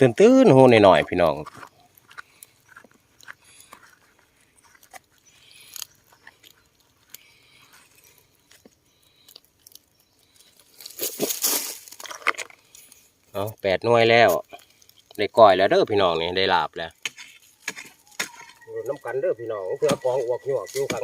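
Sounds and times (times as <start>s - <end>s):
hand spade digging in soil: 10.8s - 12.5s, 17.0s - 19.2s, 19.8s - 21.0s.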